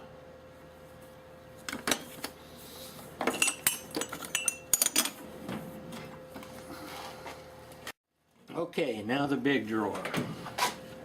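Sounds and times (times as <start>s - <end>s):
steel tools clinking in a drawer: 3.2s - 5.2s.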